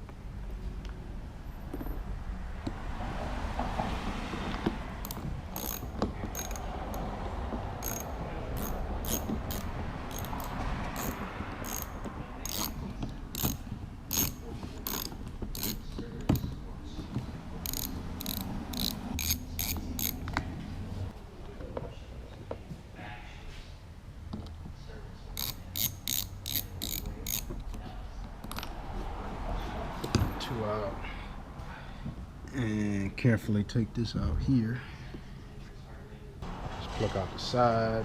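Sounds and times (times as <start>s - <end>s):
ratchet wrench clicking: 5.0s - 7.1s, 7.8s - 16.4s, 17.6s - 20.4s, 25.4s - 27.5s, 28.4s - 28.7s.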